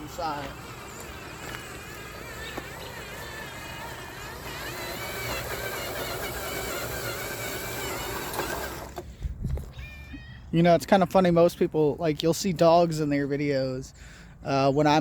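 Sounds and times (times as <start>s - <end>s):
electric motor whining: 0.0s - 9.2s.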